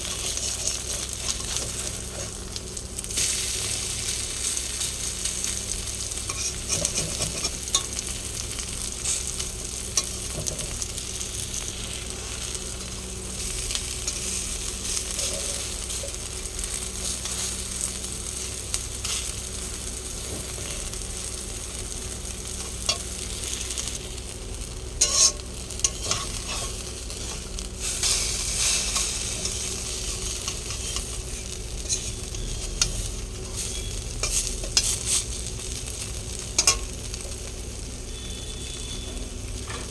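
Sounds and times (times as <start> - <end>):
utensil scraping a pan: 0.0 - 2.4, 6.3 - 7.8, 14.0 - 16.2, 25.0 - 35.3
batter sizzling in oil: 0.0 - 39.9.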